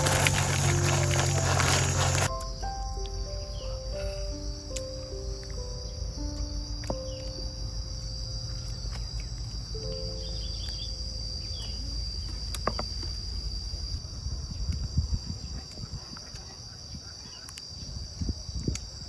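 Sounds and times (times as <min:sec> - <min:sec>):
background music notes: 0:00.0 - 0:09.0, 0:09.6 - 0:11.8
low rumble: 0:00.0 - 0:12.3
insects droning: 0:00.0 - 0:19.0.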